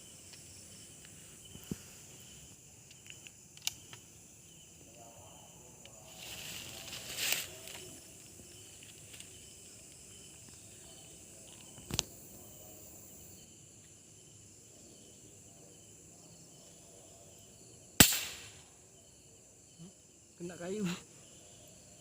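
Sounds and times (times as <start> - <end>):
crickets chirring: 0.0 - 22.0
sharp crack: 18.0 - 18.7.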